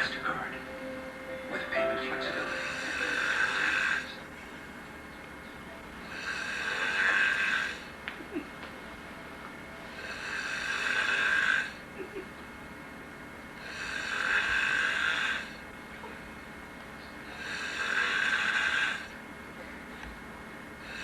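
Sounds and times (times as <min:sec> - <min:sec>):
person snoring: 0:02.3 - 0:04.2, 0:06.1 - 0:07.9, 0:09.9 - 0:11.8, 0:13.6 - 0:15.6, 0:17.3 - 0:19.1.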